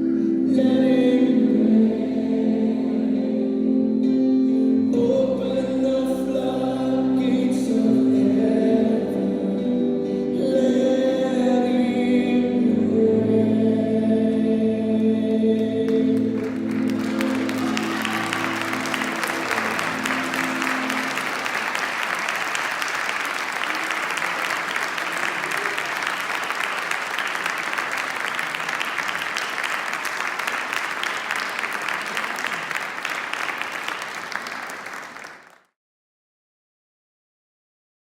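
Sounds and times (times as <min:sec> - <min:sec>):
held music notes: 0:15.8 - 0:23.1
congregation applauding: 0:15.9 - 0:35.7.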